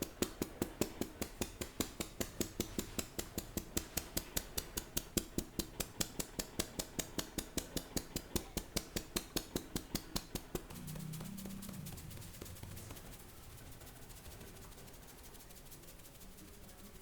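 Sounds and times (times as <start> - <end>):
hand massage slaps: 0.0 - 13.2
low steady hum: 7.6 - 17.0.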